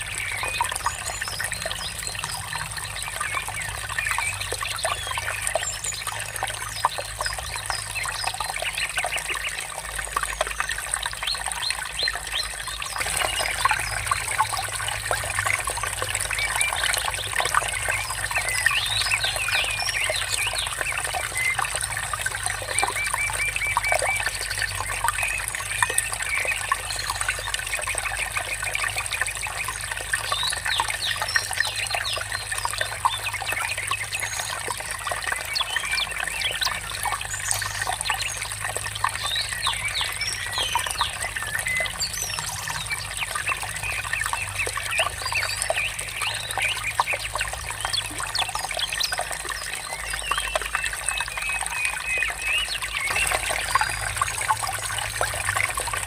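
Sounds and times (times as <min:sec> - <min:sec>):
water murmuring: 0:00.0 - 0:56.0
birds chirping: 0:10.3 - 0:56.0.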